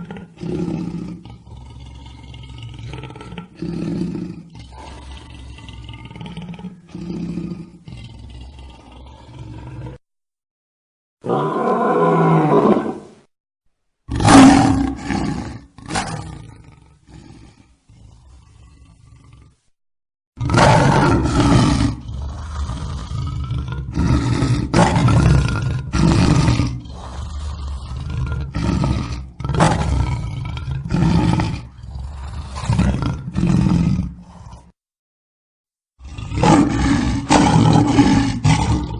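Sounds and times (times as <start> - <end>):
lion grunting: 0.0 - 10.0, 20.4 - 34.8, 36.0 - 38.9
lion roaring: 0.0 - 10.0, 11.2 - 13.1, 14.1 - 19.6, 20.4 - 34.8, 36.0 - 38.9.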